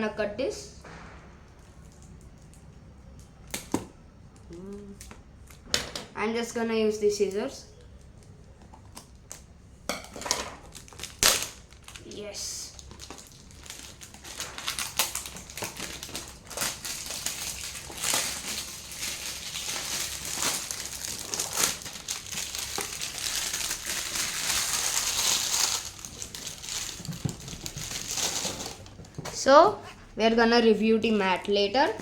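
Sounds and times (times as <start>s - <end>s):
cardboard and wrapping crinkling: 10.3s - 29.3s
small crackles and clicks: 10.6s - 29.0s.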